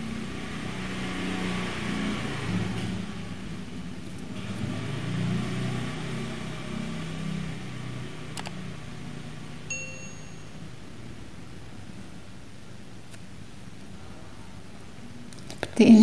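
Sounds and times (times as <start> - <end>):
bright metallic ding: 9.7 - 10.6.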